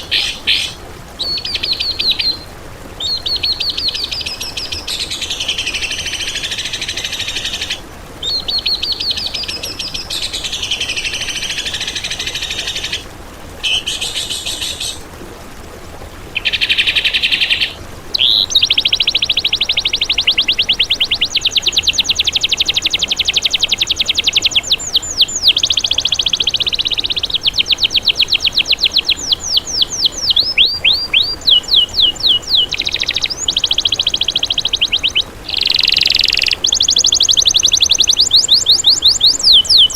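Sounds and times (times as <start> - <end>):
songbird trilling song: 0.0 - 13.0, 16.4 - 39.9.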